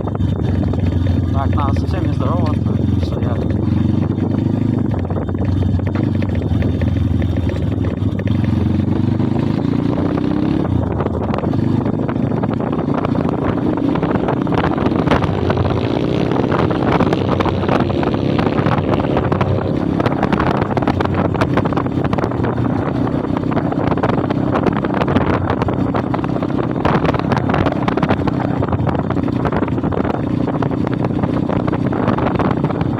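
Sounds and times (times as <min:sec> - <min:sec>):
motorbike engine revving: 0:00.0 - 0:32.9
wind buffeting microphone: 0:00.0 - 0:32.9.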